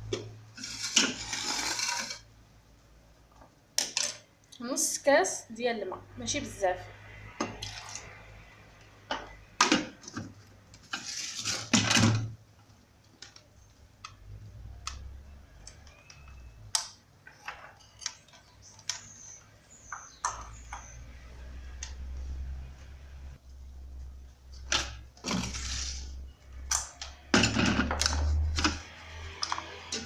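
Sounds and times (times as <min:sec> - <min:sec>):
kitchenware clicks and knocks: 0:26.7 - 0:28.8.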